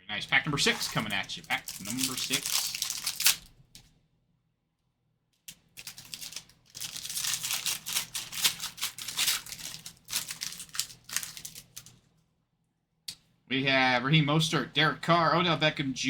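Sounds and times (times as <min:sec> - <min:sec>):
wrapper tearing and crinkling: 0:00.4 - 0:03.6, 0:05.5 - 0:12.0.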